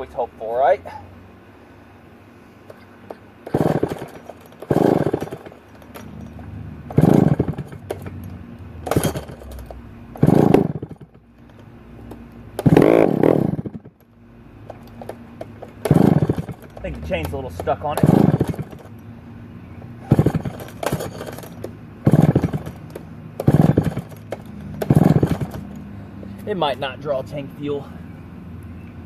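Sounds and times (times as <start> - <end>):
chainsaw pull-start cranking: 3.1 - 11.2, 12.6 - 13.9, 14.7 - 19.0, 20.0 - 25.9.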